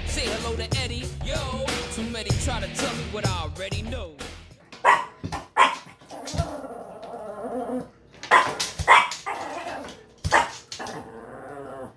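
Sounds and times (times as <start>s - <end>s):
dog barking: 4.7s - 6.6s, 8.3s - 11.0s.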